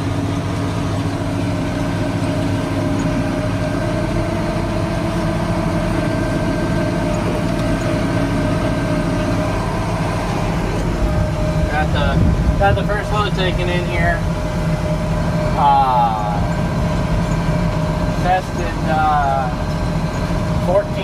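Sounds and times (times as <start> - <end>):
diesel engine drone: 0.0 - 21.0
mid-pitched whine: 0.0 - 21.0.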